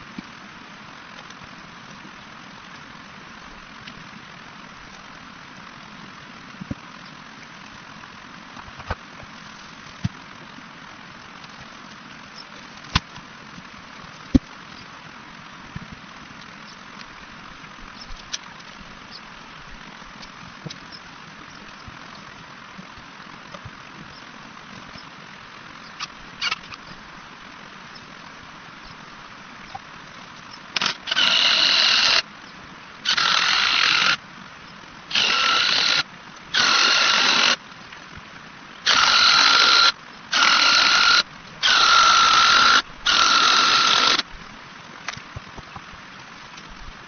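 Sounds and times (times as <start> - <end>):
chainsaw whining cutting logs: 30.8 - 32.2, 33.0 - 34.2, 35.1 - 37.6, 38.8 - 44.2.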